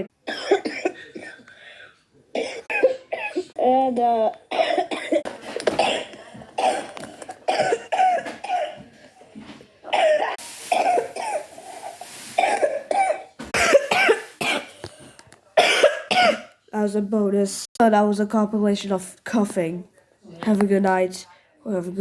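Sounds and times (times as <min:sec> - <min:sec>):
person coughing: 0:00.0 - 0:03.5, 0:04.5 - 0:08.8, 0:09.9 - 0:11.5, 0:12.4 - 0:14.8, 0:15.6 - 0:16.5.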